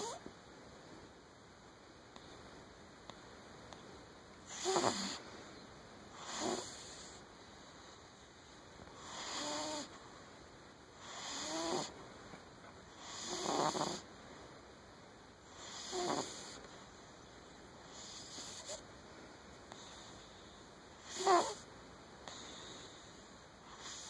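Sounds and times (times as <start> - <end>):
cat snoring: 0.0 - 0.2, 4.5 - 5.2, 6.1 - 7.2, 9.0 - 10.0, 11.0 - 11.9, 12.9 - 14.1, 15.5 - 16.6, 17.9 - 18.8, 19.7 - 24.0.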